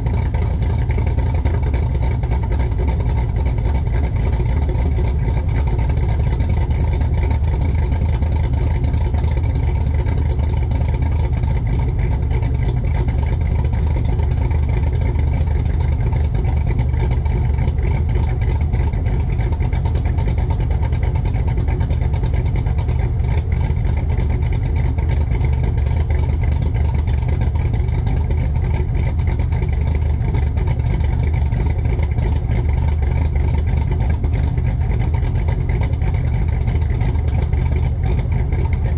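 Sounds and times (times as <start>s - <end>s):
engine idling: 0.0s - 38.9s.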